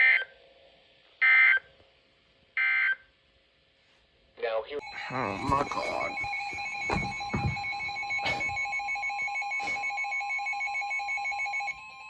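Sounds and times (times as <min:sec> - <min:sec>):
pulsing trill-like alarm: 0:04.8 - 0:12.0.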